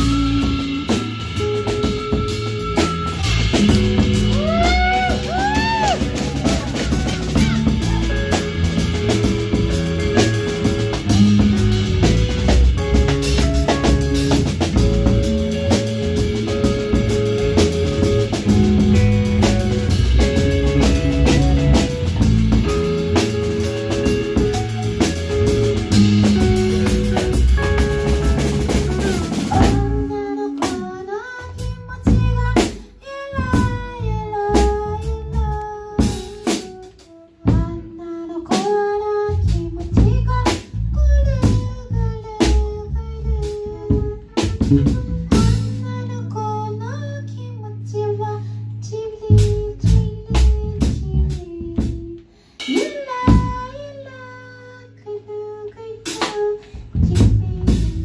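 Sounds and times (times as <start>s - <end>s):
bending melody line: 0.0s - 38.1s
busy drumming: 0.0s - 46.3s, 49.2s - 54.6s, 56.0s - 58.0s
live band playing: 0.0s - 58.0s.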